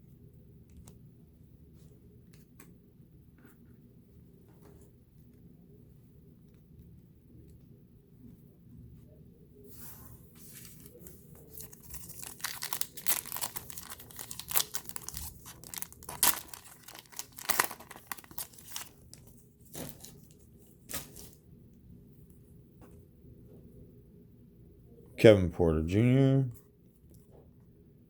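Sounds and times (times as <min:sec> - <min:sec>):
plastic wrapper tearing and crinkling: 0:10.7 - 0:21.3.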